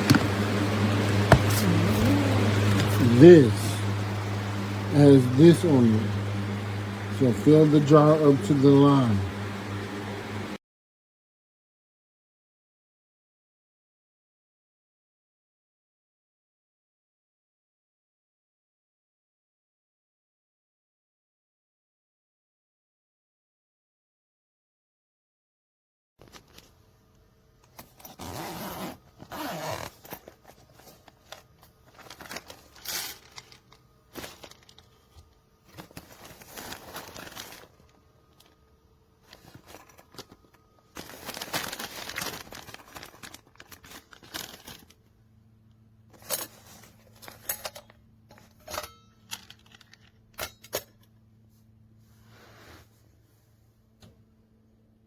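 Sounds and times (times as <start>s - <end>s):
rustling and scraping of objects: 0.0s - 7.5s, 26.2s - 27.0s, 27.6s - 45.1s, 46.0s - 54.1s
steady low hum: 0.0s - 10.6s.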